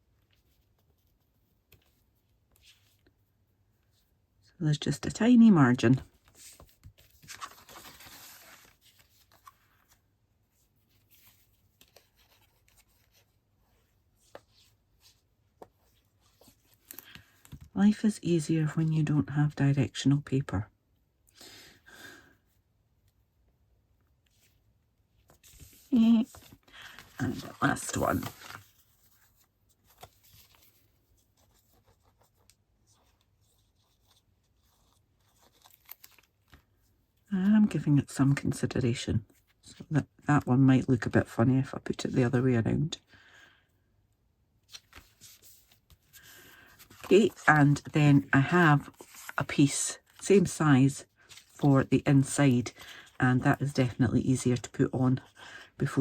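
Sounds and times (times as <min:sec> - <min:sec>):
paper rustling: 0:05.9 - 0:17.7, 0:24.3 - 0:37.0, 0:44.6 - 0:54.7.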